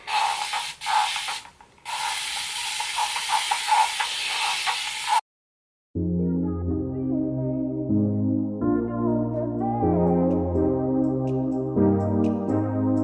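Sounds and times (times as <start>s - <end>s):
soft background music: 6.0s - 13.0s.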